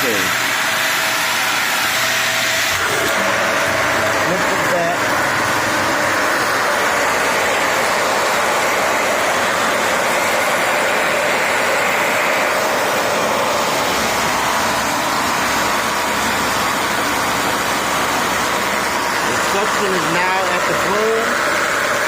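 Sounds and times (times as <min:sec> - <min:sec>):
upright vacuum cleaner running: 0:00.0 - 0:22.0.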